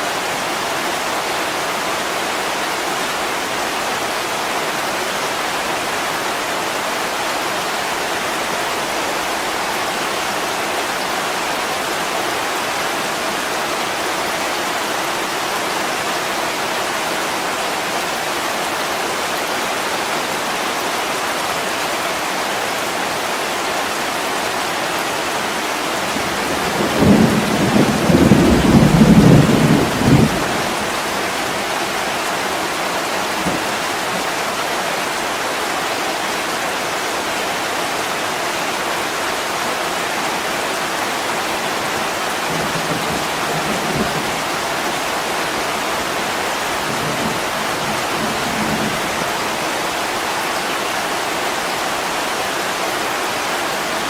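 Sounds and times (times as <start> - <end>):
heavy rain falling: 0.0 - 54.0
thunder rumbling: 26.1 - 31.8, 42.4 - 45.3, 46.6 - 49.7.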